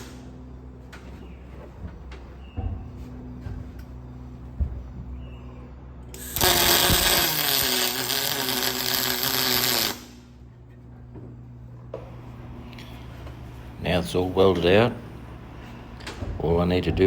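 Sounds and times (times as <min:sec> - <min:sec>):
welding arc buzzing hiss: 0:00.0 - 0:00.4, 0:06.1 - 0:10.4
low steady hum: 0:00.0 - 0:17.0.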